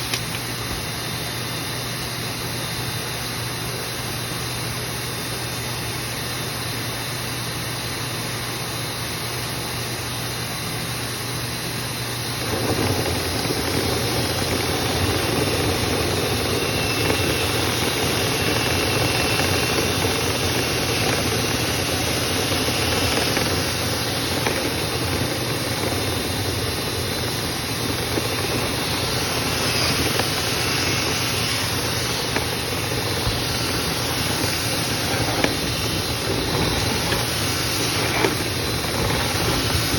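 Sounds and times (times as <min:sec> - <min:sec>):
dryer vent cleaning machine running: 0:00.0 - 0:39.9.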